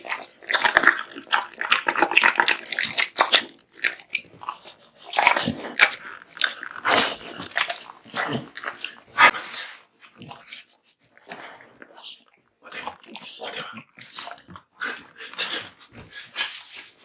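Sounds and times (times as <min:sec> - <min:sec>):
dog chewing meat and bones: 0:00.0 - 0:10.6.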